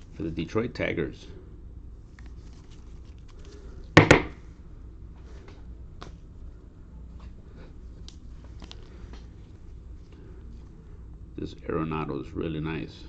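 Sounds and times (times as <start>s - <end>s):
low steady hum: 0.0s - 13.0s
loud short thump: 4.0s - 4.4s.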